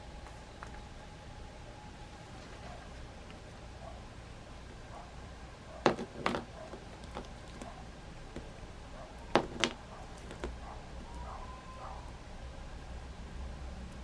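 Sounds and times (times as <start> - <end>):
plastic toys clacking: 9.3 - 10.6.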